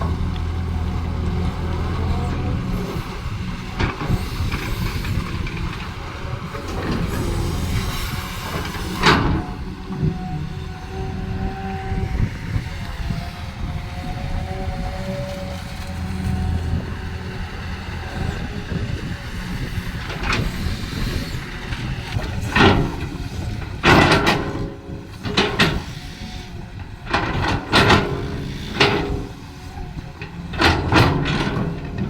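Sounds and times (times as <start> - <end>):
loud clanks and scrapes: 0.0 - 10.2, 14.6 - 26.4, 27.0 - 32.0
excavator engine running: 0.0 - 32.0.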